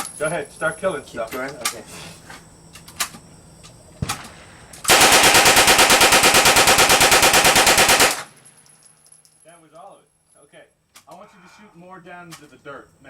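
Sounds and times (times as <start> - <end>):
automatic gunfire: 4.0 - 8.4.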